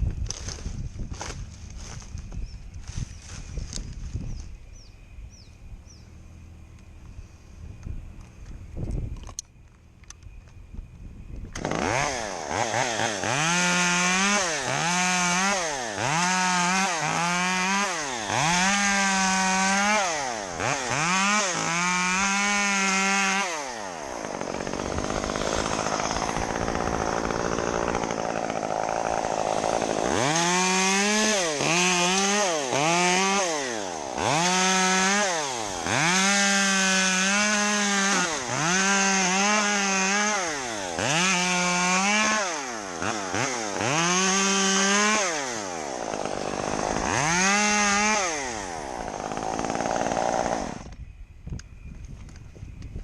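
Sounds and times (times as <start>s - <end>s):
chainsaw revving: 11.6s - 51.0s.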